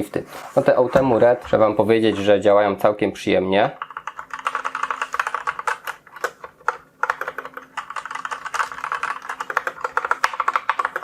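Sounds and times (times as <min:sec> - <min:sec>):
mechanical keyboard key clacks: 0:03.8 - 0:11.0.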